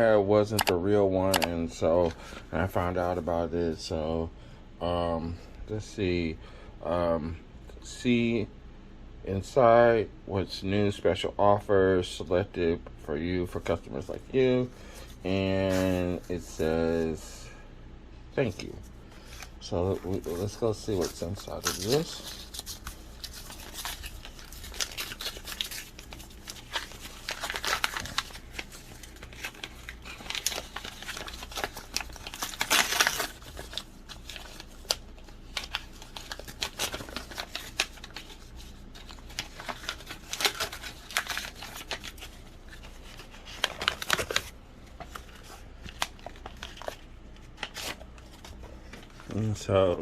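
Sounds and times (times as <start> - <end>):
paper and plastic crinkling: 18.4 - 50.0.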